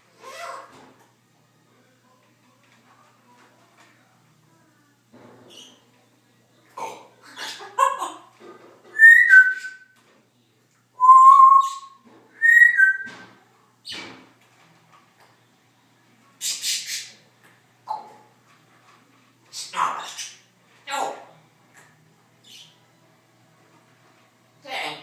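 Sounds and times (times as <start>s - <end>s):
parrot whistling: 9.0s - 9.9s, 11.0s - 13.1s
parrot chattering: 19.5s - 20.4s.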